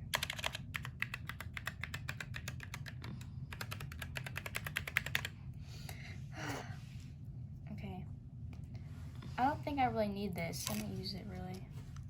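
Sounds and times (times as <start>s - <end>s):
mechanical keyboard typing: 0.1s - 5.3s.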